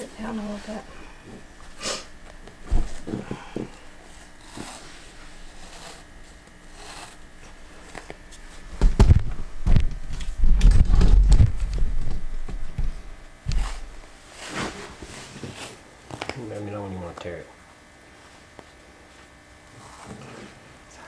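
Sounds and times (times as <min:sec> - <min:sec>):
wrap rustling and scraping: 0:00.0 - 0:12.8, 0:13.5 - 0:15.9.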